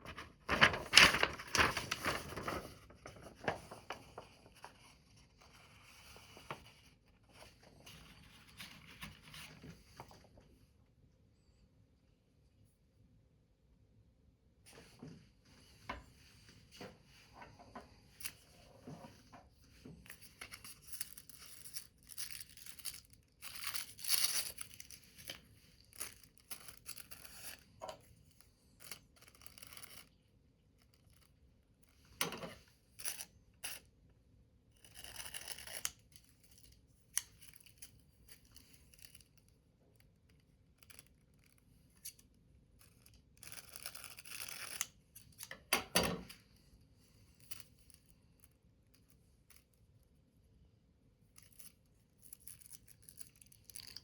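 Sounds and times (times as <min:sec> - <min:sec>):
paper rustling: 0:00.0 - 0:10.3.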